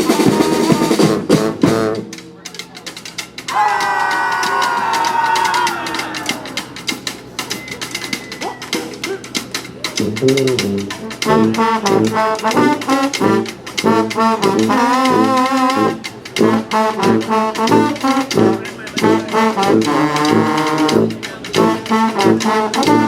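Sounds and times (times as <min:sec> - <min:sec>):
brass band horns: 0:00.0 - 0:02.2, 0:10.0 - 0:23.0
steady drum beat: 0:00.0 - 0:23.0.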